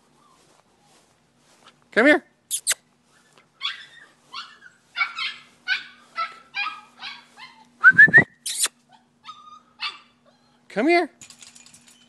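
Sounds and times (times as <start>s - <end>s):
puppy yipping: 2.5s - 7.7s, 8.5s - 10.6s.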